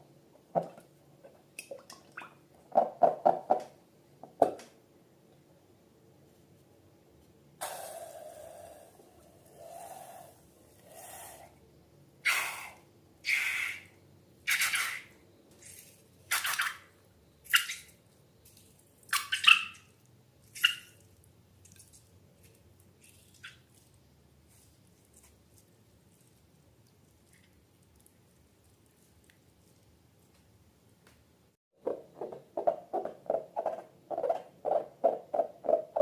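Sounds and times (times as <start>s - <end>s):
wet slime squelches: 17.4s - 30.6s.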